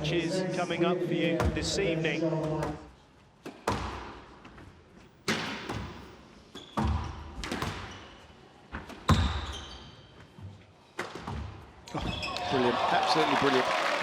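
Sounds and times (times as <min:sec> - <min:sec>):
squash ball hits: 0:03.4 - 0:04.3, 0:05.2 - 0:06.1, 0:06.7 - 0:08.2, 0:08.8 - 0:09.5, 0:11.0 - 0:12.1.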